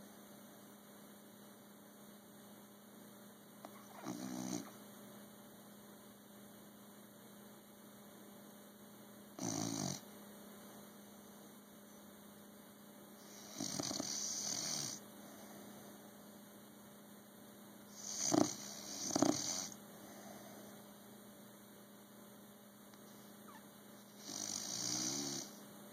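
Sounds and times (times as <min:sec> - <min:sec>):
dog snoring: 0:03.6 - 0:04.8, 0:09.4 - 0:10.0, 0:13.2 - 0:15.7, 0:17.9 - 0:20.8, 0:23.5 - 0:25.6.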